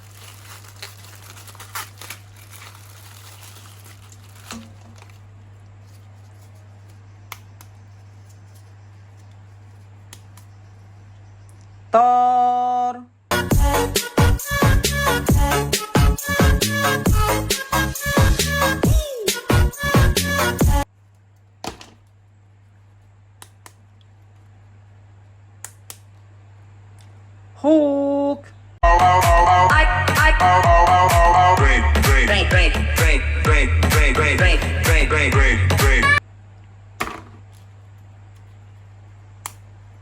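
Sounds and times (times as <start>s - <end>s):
low electrical hum: 0.0s - 13.4s, 20.8s - 28.8s, 36.2s - 40.0s.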